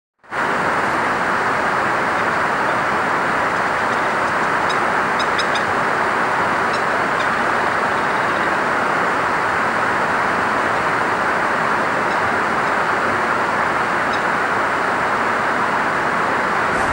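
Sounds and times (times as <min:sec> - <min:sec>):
loud steady rushing noise: 0:00.3 - 0:03.9, 0:16.4 - 0:16.9.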